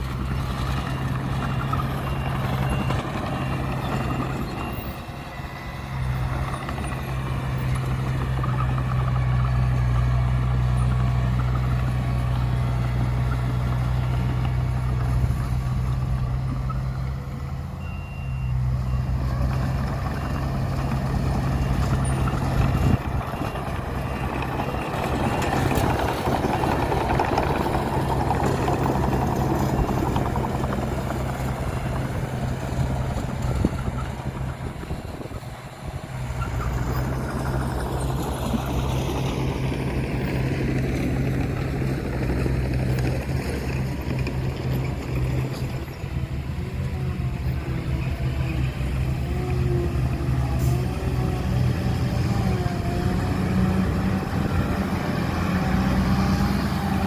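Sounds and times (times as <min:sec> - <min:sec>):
heavy diesel engines running: 0:00.0 - 0:57.0
reversing alarm beeping: 0:00.7 - 0:07.8, 0:17.8 - 0:19.2.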